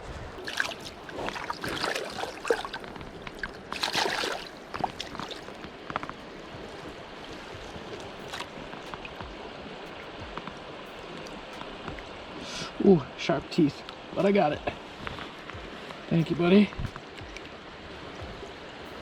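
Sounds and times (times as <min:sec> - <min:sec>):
splashing and rustling: 0:00.0 - 0:12.6
river water flowing: 0:00.0 - 0:19.0.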